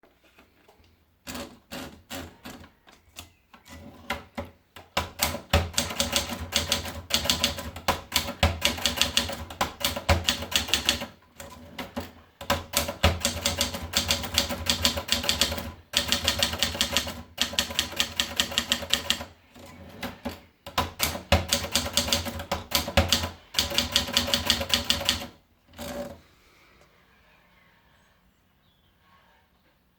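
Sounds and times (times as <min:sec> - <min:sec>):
typewriter keys striking: 0:05.0 - 0:19.3, 0:20.0 - 0:26.0.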